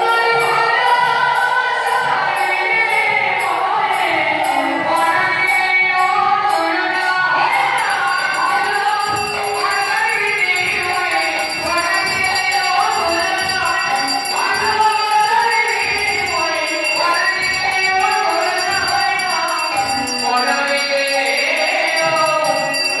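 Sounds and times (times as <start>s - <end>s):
voices singing devotional song: 0.0s - 23.0s
metallic jingling percussion: 0.2s - 23.0s
steady drum beat: 7.5s - 23.0s.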